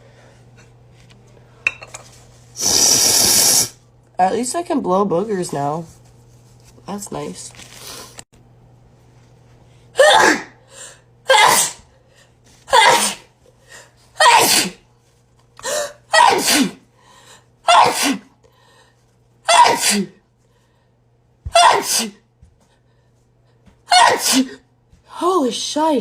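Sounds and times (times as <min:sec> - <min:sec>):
woman sneezing: 0:10.0 - 0:10.6, 0:11.3 - 0:11.9, 0:12.7 - 0:13.3, 0:14.2 - 0:14.8, 0:16.1 - 0:16.8, 0:17.7 - 0:18.3, 0:19.5 - 0:20.2, 0:21.5 - 0:22.2, 0:23.9 - 0:24.6.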